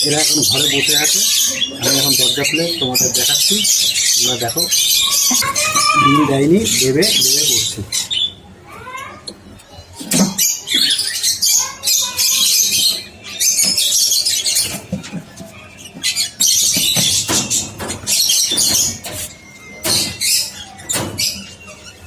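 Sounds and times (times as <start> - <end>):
parrots screeching: 0.0 - 9.6, 10.3 - 14.8.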